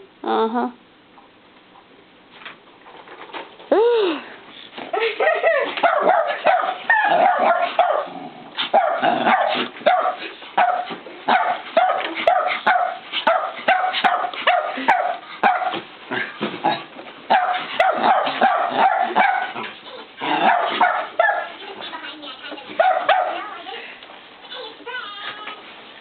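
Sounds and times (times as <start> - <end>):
dog barking: 5.3 - 8.1, 8.7 - 15.8, 17.3 - 19.7, 20.3 - 21.6, 22.8 - 23.4.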